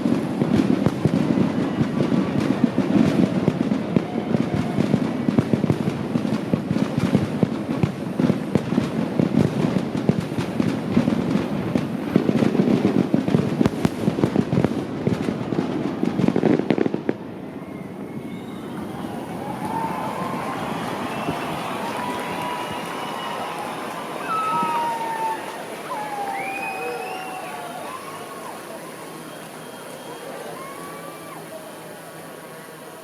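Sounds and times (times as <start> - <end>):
fireworks crackling and banging: 0.0 - 33.0.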